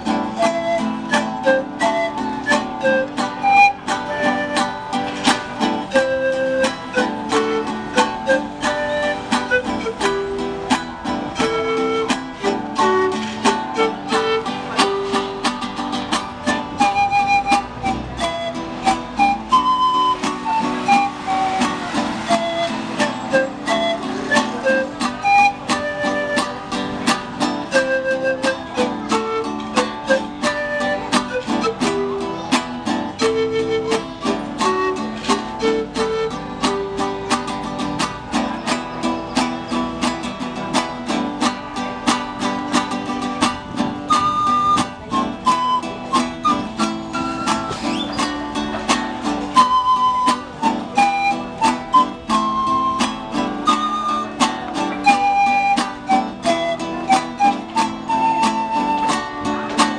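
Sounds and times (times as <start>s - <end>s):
acoustic plucked string music: 0.0s - 59.9s.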